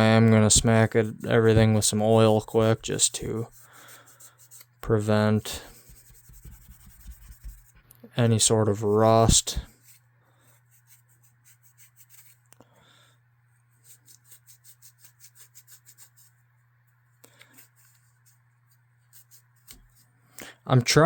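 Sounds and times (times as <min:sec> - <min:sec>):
polishing pad rubbing on steel: 0:05.4 - 0:07.8, 0:10.6 - 0:12.4, 0:13.8 - 0:16.4.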